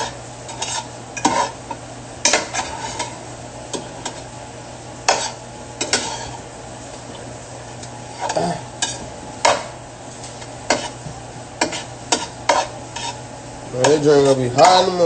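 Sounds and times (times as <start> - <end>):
utensil scraping a pan: 0.0 - 3.2, 5.1 - 6.4, 8.1 - 9.6, 10.2 - 11.0, 11.6 - 15.0
food sizzling in a frying pan: 0.0 - 15.0.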